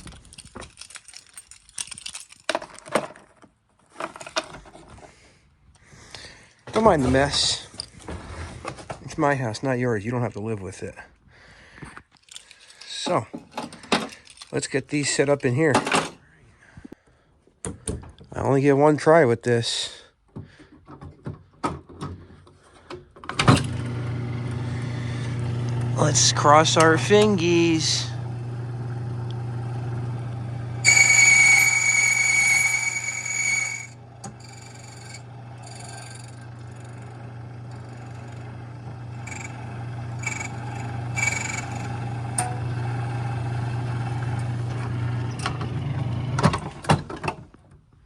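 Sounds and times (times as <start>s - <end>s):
light clicks and knocks of keys: 0.0s - 2.9s, 11.9s - 14.7s
key-cutting machine humming: 23.6s - 46.4s.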